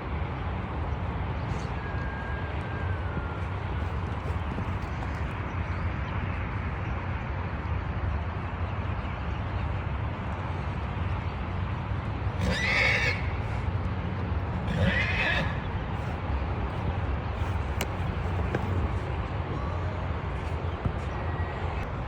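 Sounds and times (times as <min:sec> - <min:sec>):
horse whinnying: 0:12.4 - 0:13.4, 0:14.6 - 0:15.7.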